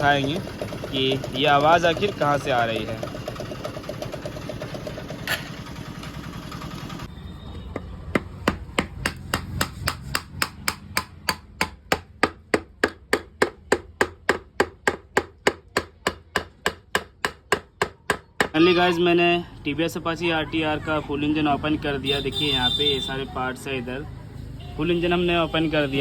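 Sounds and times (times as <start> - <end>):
motorcycle engine running: 0.0 - 7.1
hammer strikes on metal: 7.8 - 18.6.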